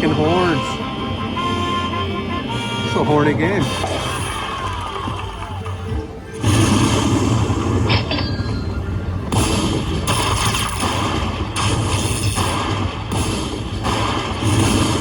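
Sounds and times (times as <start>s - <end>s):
slot machine music: 0.0s - 12.7s.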